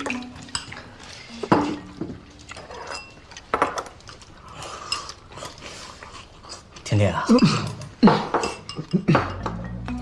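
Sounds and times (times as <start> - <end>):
tableware knocking: 1.4 - 2.2, 8.0 - 9.8.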